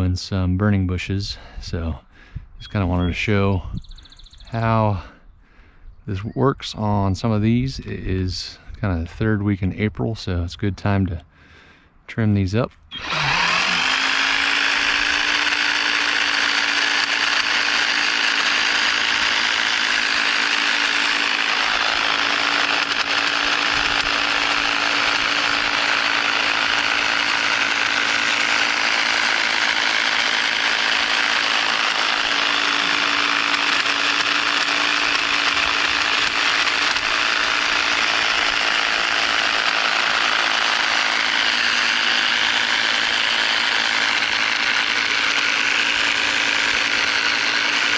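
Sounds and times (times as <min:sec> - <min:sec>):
hedge trimmer running: 0:12.7 - 0:47.9.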